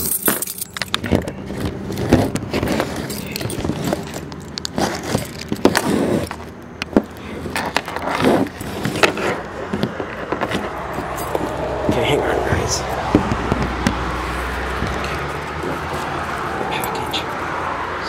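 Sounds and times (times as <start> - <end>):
box handling rustling: 0.9 - 11.9
key scraping cardboard: 1.5 - 12.0.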